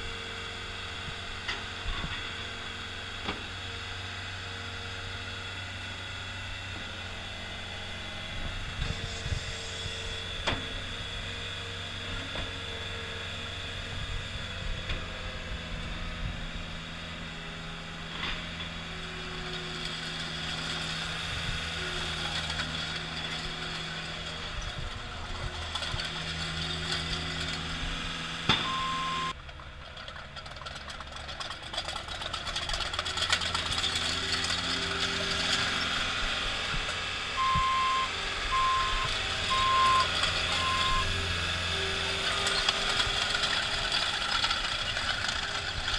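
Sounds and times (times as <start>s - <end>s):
loader engine running: 0.0s - 45.9s
short beep: 28.6s - 29.3s, 37.4s - 41.1s.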